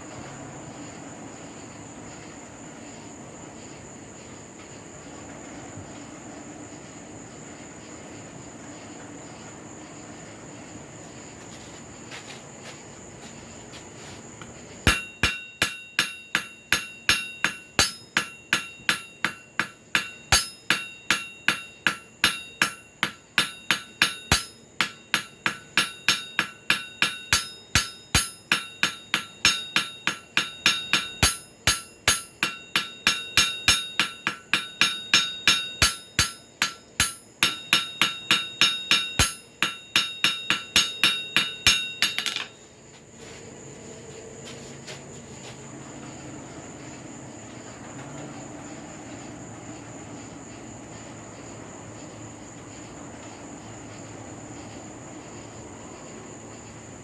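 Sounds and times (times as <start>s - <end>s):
hammer blows on an anvil: 14.8s - 42.6s.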